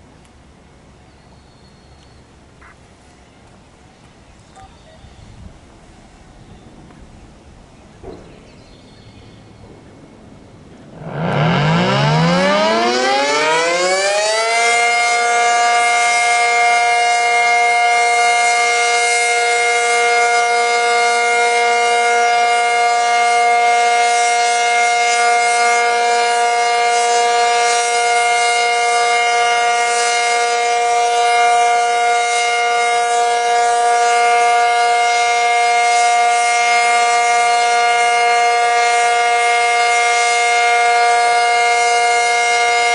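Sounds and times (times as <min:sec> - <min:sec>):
warning siren winding up: 0:11.0 - 0:42.9.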